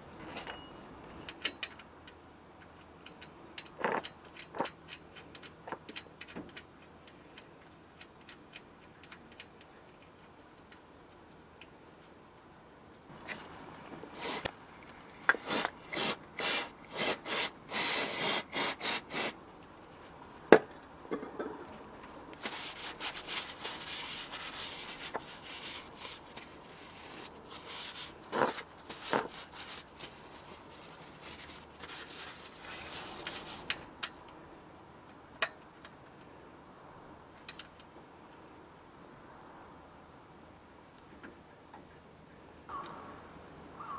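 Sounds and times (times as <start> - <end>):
short rubbing strokes: 15.4 - 19.4, 22.4 - 33.9
rough scraping: 22.4 - 33.9.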